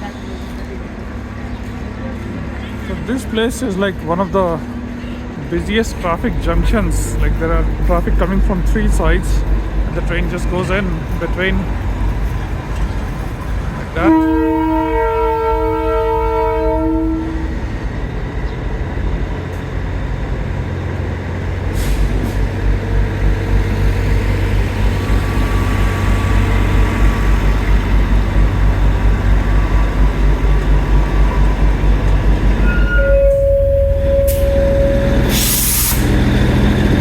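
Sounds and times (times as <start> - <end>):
locomotive rhythmic pulsing: 0.0 - 21.6, 22.4 - 37.0
single-note train horn: 14.0 - 17.5, 32.6 - 36.1
chorded train horn: 14.0 - 17.6, 32.6 - 36.1.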